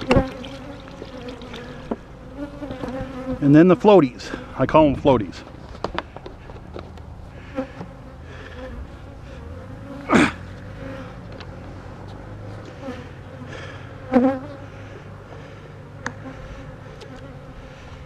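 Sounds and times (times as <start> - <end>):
honeybees buzzing: 0.0 - 4.8, 5.5 - 18.0.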